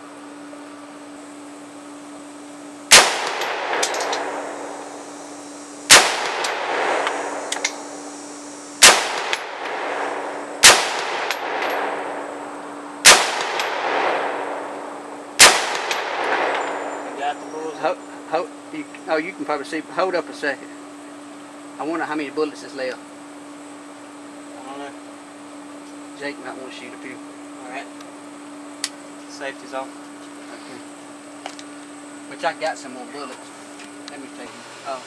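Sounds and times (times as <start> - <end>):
gunshots with echoing tail: 2.9 - 5.1, 5.9 - 8.0, 8.8 - 17.4.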